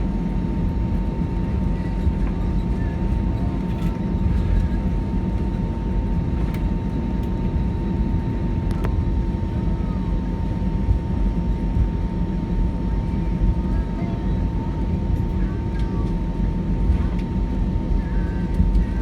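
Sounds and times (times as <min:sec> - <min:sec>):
jet engine low rumble: 0:00.0 - 0:19.0.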